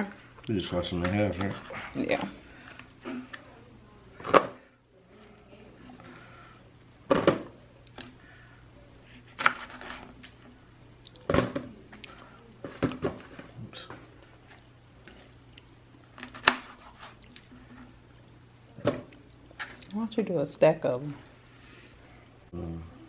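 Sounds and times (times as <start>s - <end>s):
knife slicing pineapple on board: 16.2s - 17.2s.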